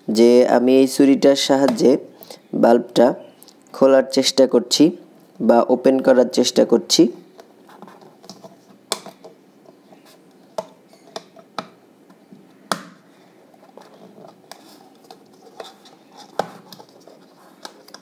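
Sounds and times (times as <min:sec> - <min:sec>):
knife scraping plastic: 0:13.5 - 0:18.0.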